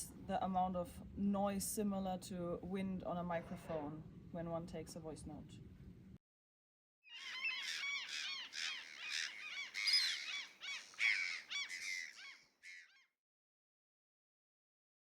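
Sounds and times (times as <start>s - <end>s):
chorus of high animal calls: 7.1s - 13.0s.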